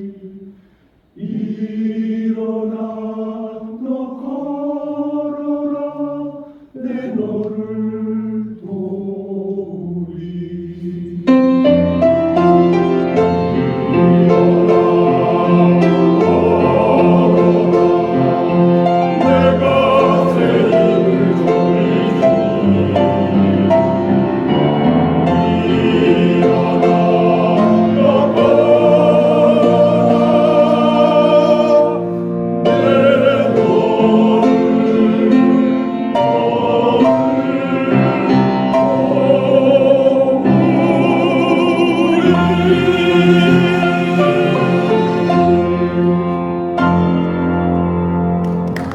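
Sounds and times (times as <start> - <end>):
choir singing gospel: 0.0 - 47.6
instrumental accompaniment: 11.3 - 48.9.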